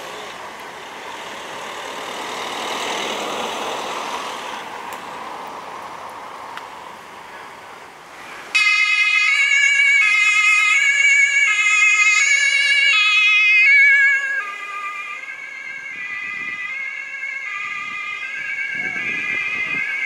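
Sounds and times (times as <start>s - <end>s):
two-tone emergency siren: 8.6s - 20.0s.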